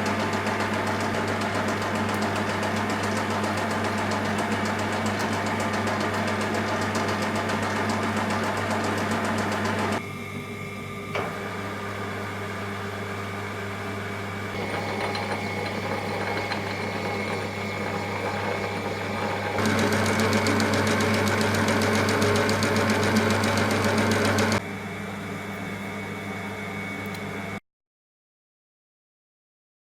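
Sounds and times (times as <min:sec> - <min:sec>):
lathe motor humming: 0:00.0 - 0:10.0, 0:11.1 - 0:24.6.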